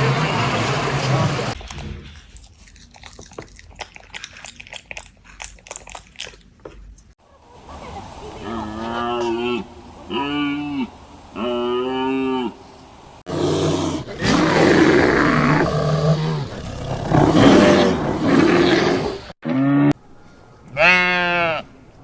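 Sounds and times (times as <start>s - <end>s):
large animal roaring: 8.4s - 12.7s, 13.3s - 20.0s
short pitched animal calls: 20.0s - 22.0s.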